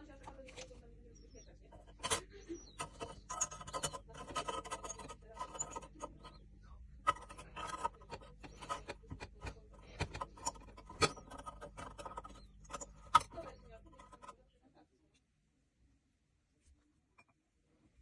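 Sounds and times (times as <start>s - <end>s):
scraping and clicking on boiler parts: 0.0s - 14.5s
faint low hum: 0.0s - 18.0s.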